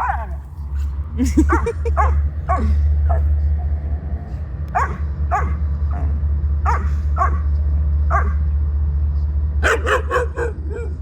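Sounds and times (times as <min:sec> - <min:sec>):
dogs barking and yipping: 0:00.0 - 0:00.5, 0:01.3 - 0:03.4, 0:04.7 - 0:07.5, 0:08.1 - 0:08.4, 0:09.6 - 0:11.0
low rumble: 0:00.0 - 0:09.6.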